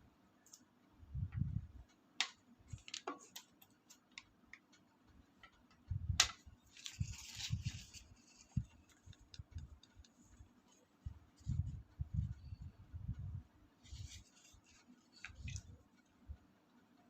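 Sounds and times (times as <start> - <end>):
plastic toy clicks and taps: 2.2 - 6.4
packaging rustling: 6.7 - 9.0.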